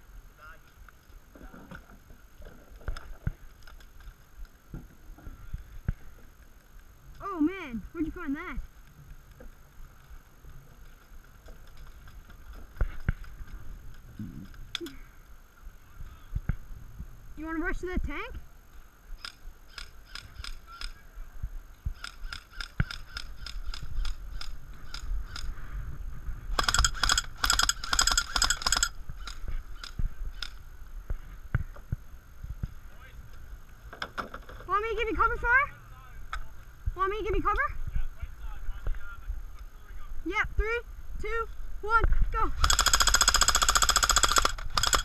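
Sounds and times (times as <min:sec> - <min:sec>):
airsoft guns firing: 0:26.6 - 0:29.0, 0:42.6 - 0:45.0.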